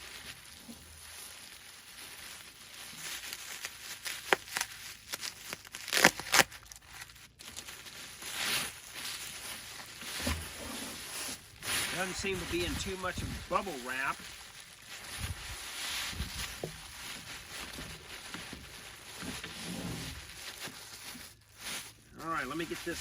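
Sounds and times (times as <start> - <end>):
packing material rustling and crinkling: 0.0 - 23.0
sharp cracks: 3.5 - 6.8.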